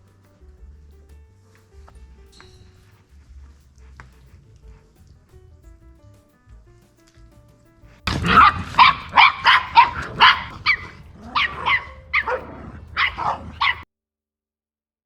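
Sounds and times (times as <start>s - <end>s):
puppies yapping: 8.1s - 13.8s.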